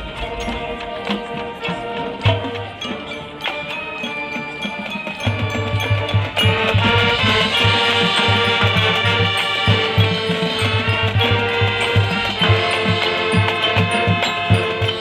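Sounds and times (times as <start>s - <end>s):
low drum beat: 0.0s - 2.7s
brass chords: 0.0s - 3.9s, 5.5s - 15.0s
percussion ticking: 0.0s - 15.0s.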